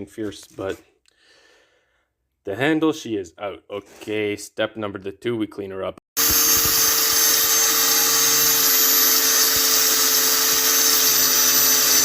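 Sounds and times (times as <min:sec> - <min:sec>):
power tool motor whine: 0:06.2 - 0:12.0.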